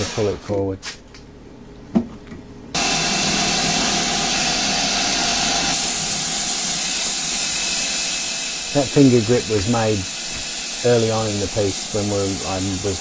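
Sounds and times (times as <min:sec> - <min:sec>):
mist sprayer hissing: 0:02.8 - 0:13.0.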